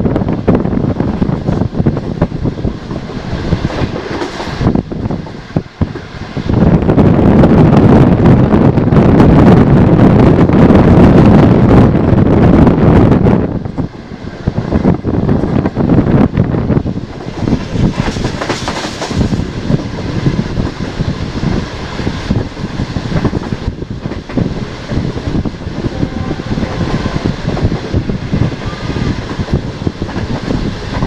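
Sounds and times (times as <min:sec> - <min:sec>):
train wheels clattering over rail joints: 0:01.3 - 0:05.3, 0:16.9 - 0:25.5, 0:29.2 - 0:31.0.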